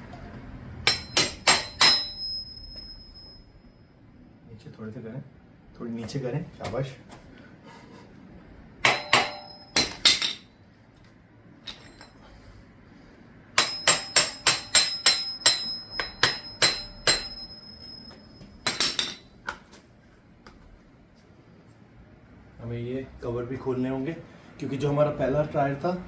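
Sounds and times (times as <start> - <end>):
hammer striking metal: 0.8 - 3.5, 8.8 - 10.5, 13.5 - 19.4.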